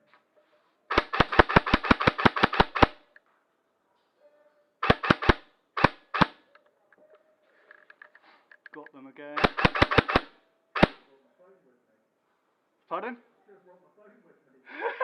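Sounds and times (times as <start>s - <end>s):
airsoft gun shots: 0.9s - 3.1s, 4.8s - 6.5s, 9.4s - 11.0s.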